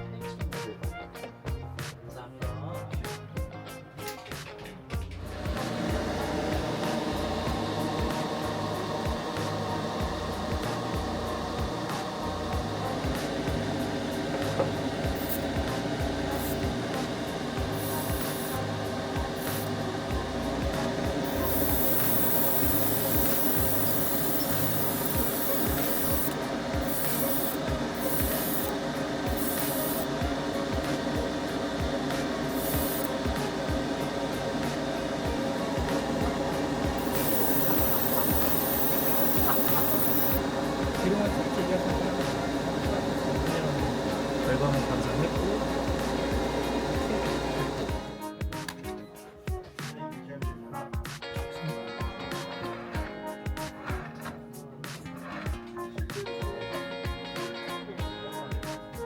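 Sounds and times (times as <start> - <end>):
music with drum beat: 0.0 - 59.0
paint spray hissing: 5.2 - 48.1.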